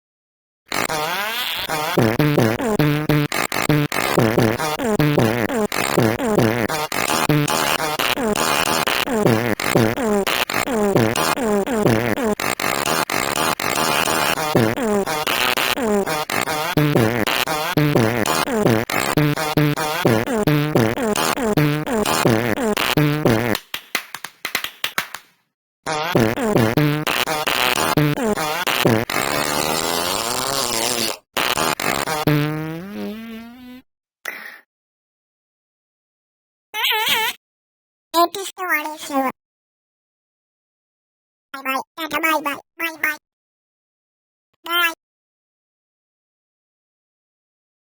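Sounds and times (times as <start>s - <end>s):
fart sounds: 0.7s - 23.7s, 25.9s - 33.9s.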